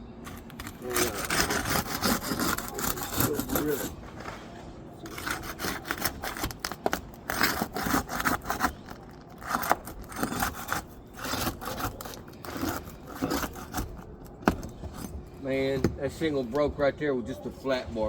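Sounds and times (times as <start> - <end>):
metal bar scraping shingles: 0.2 - 16.5
shingles cracking and breaking: 5.1 - 15.2.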